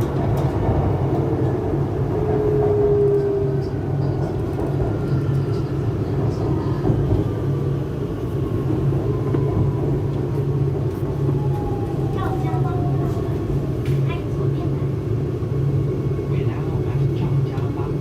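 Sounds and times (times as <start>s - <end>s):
electric train rumbling: 0.0s - 18.0s.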